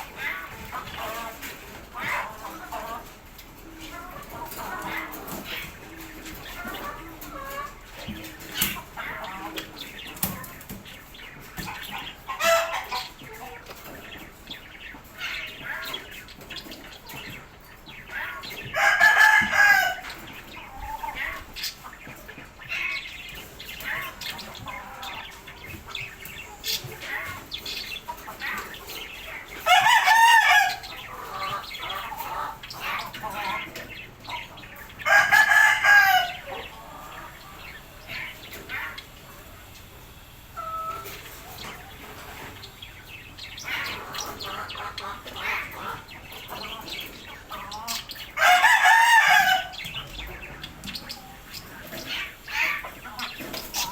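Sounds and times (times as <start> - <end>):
clucking and chirping: 0.0 - 53.9
rooster crowing: 35.0 - 36.5, 48.4 - 49.8.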